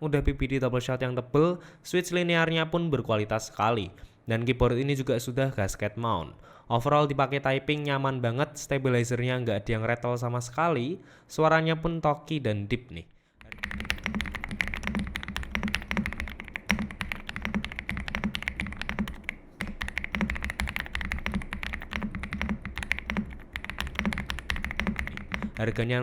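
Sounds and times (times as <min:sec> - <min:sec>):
typing on mechanical keyboard: 0:13.4 - 0:25.8.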